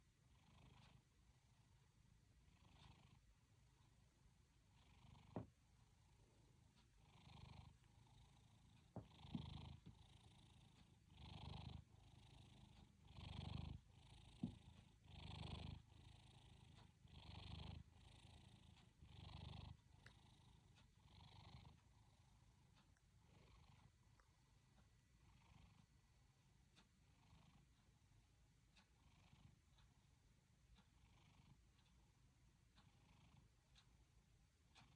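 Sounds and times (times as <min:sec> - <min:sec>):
cat snoring faintly: 0:00.0 - 0:34.9.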